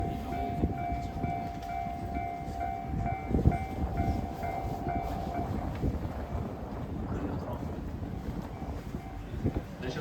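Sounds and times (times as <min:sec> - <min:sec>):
diesel train rumbling: 0:00.0 - 0:10.0.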